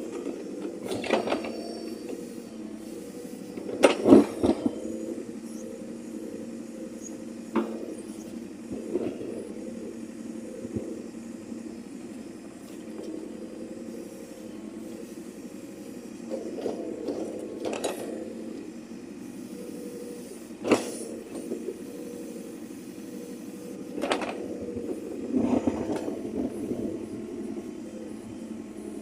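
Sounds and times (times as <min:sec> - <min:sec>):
diesel engine droning: 0:00.0 - 0:29.0.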